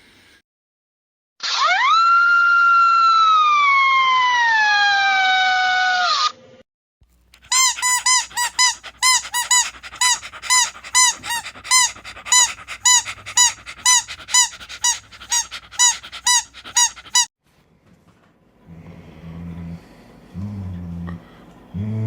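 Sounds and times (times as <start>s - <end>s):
squeaky toy squeaking: 7.4s - 17.3s.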